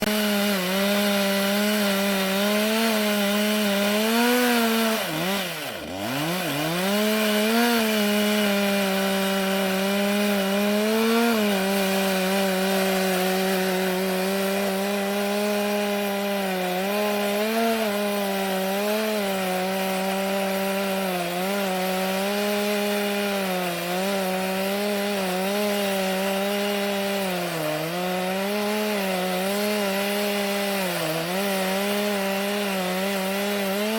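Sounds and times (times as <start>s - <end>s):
chainsaw cutting log: 0.0s - 33.9s.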